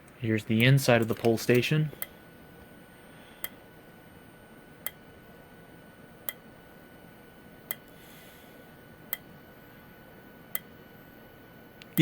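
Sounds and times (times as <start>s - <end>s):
faint sharp strobe clicks: 4.8s - 5.1s, 7.7s - 8.0s, 9.1s - 9.3s, 10.5s - 10.8s.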